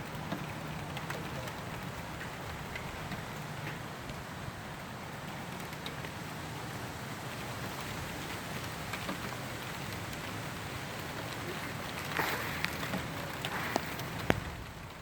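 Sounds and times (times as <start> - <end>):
steady rain falling: 0.0 - 15.0.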